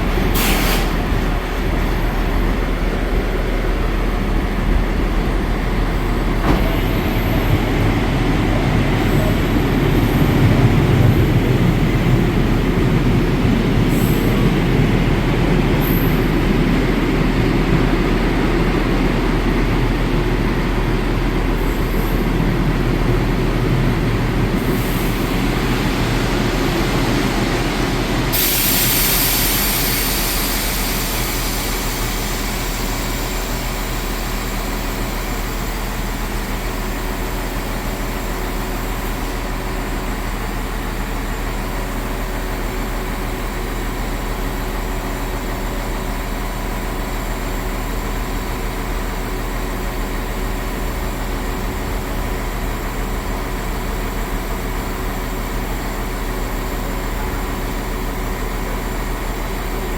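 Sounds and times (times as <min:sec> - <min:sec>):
train machinery humming: 0:00.0 - 0:59.9
loud hiss: 0:24.6 - 0:35.2.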